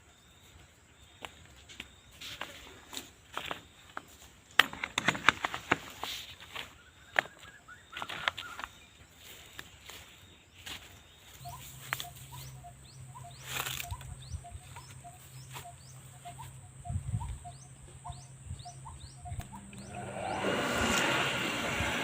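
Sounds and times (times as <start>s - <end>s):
steady low hum: 11.3s - 22.0s
small animal chirping: 11.4s - 19.9s.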